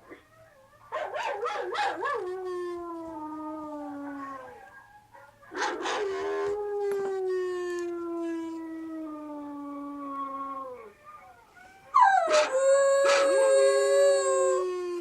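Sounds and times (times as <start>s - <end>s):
puppy howling: 5.5s - 15.0s.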